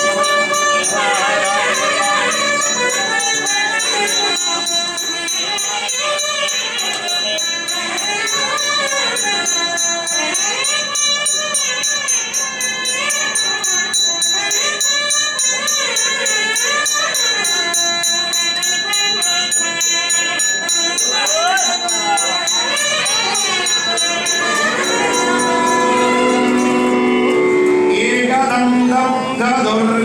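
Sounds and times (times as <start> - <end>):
steady drone: 0.0 - 14.3, 22.4 - 29.5
percussion pulse: 0.0 - 29.2
ornamented sliding melody: 0.0 - 29.7.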